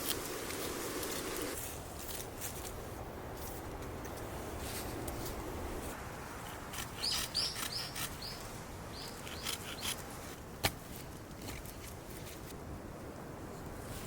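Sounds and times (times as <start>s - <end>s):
bird chirping: 7.0s - 9.9s.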